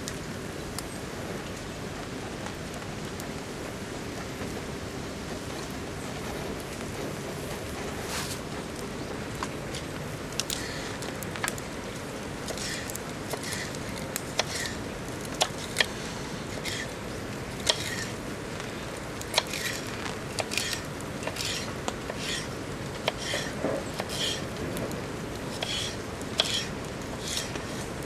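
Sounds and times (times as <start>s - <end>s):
campfire crackling: 0.0s - 28.0s
rain hiss: 0.0s - 28.0s
fire popping and spitting: 7.9s - 28.0s.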